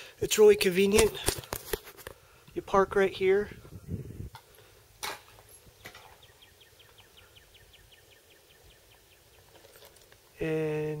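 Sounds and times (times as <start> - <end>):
sharp crack: 0.8 - 1.8.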